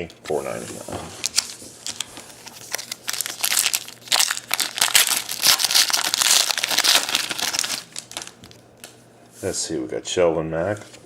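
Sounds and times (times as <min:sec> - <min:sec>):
plastic wrapper crinkling: 0:01.2 - 0:08.6.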